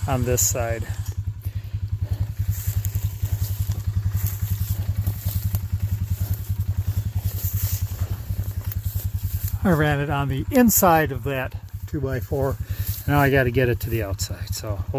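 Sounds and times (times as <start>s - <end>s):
engine idling: 0.0s - 14.9s.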